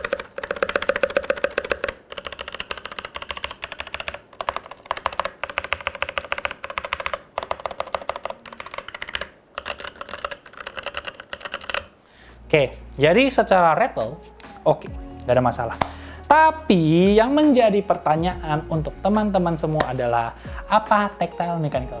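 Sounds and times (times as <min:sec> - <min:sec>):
mechanical keyboard typing: 0:00.0 - 0:12.0.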